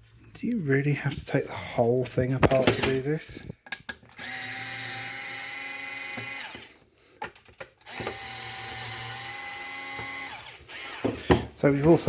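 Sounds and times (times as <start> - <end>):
electric screwdriver motor running: 4.2 - 6.7, 7.8 - 11.4.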